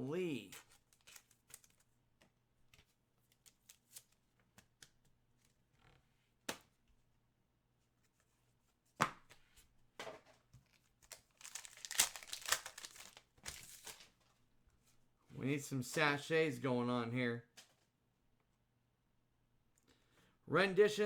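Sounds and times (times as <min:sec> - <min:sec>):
wrapper tearing and crinkling: 0:11.0 - 0:14.2.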